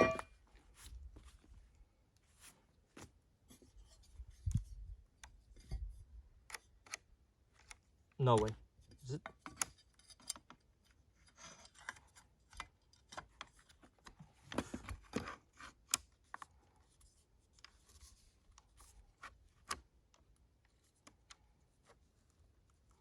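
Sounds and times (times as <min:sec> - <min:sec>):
clicks of plastic and metal parts: 0:06.4 - 0:16.5.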